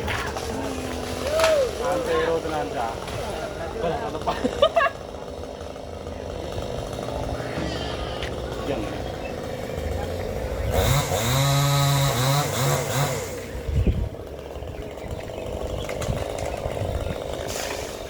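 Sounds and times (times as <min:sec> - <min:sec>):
small engine revving: 0:05.1 - 0:18.0.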